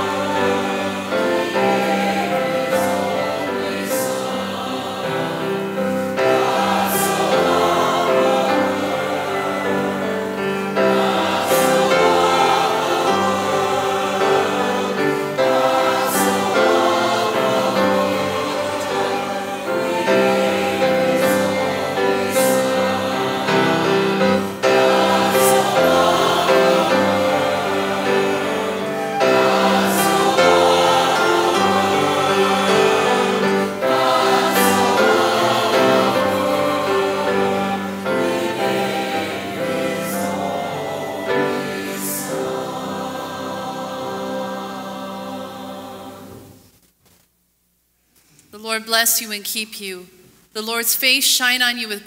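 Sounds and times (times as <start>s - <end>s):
church choir singing: 0.0s - 46.7s.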